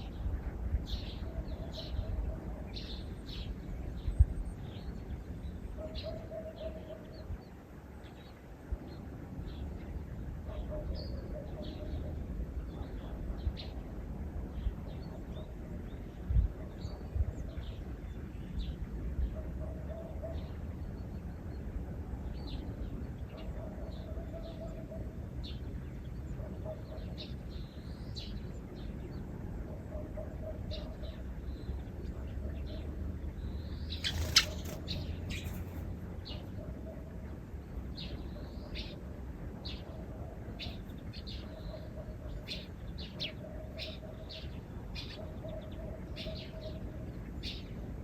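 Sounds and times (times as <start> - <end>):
small birds chirping: 30.0 - 36.6, 39.6 - 47.8.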